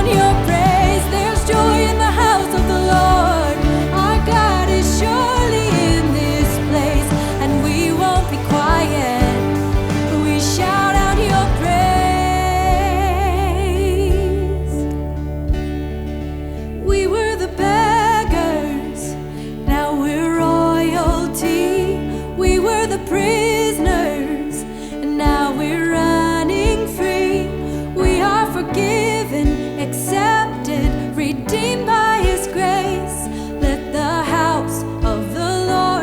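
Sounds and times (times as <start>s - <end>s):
steady kick drum beat: 0.0s - 13.3s
band playing sustained chords: 0.0s - 21.0s.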